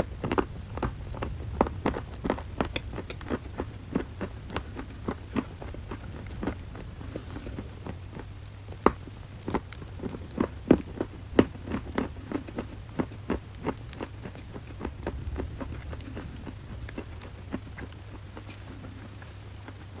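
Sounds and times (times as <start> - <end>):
crunchy clay crackling: 0.0 - 20.0
steady low hum: 0.0 - 20.0.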